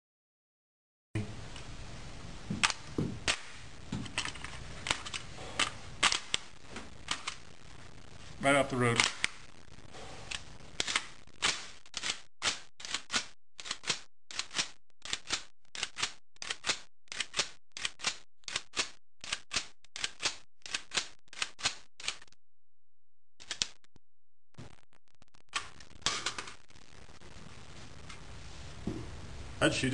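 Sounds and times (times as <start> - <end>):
sharp mechanical clicks: 10.3 - 22.3.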